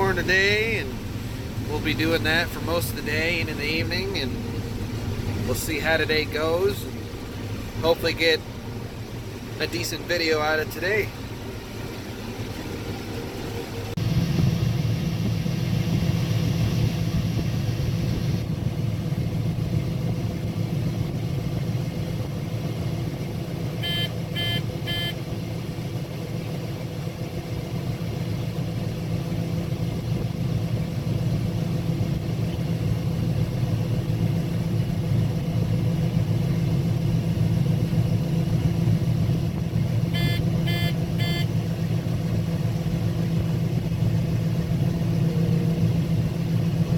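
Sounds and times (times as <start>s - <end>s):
combine harvester drone: 0.0s - 46.9s
short electronic beeps: 23.8s - 25.2s, 40.1s - 41.5s.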